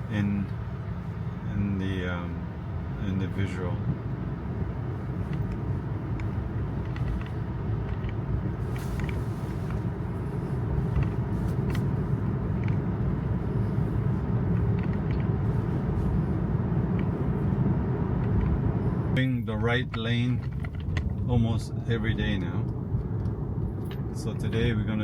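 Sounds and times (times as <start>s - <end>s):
road and tyre rumble in car cabin: 0.0s - 25.0s.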